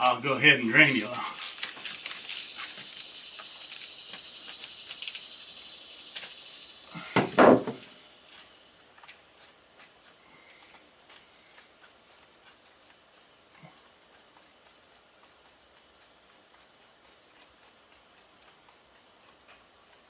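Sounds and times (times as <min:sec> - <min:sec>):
hand tools clinking: 0:00.0 - 0:04.0
steady high hiss: 0:00.0 - 0:20.0
loud clunk: 0:07.2 - 0:07.9.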